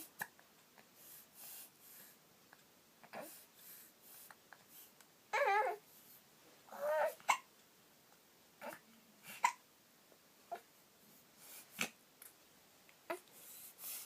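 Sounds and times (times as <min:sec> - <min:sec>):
baby vocal sounds: 0:05.3 - 0:05.9, 0:06.7 - 0:07.5, 0:08.6 - 0:09.6, 0:13.1 - 0:13.4
baby hiccuping: 0:07.0 - 0:07.5, 0:08.6 - 0:09.6.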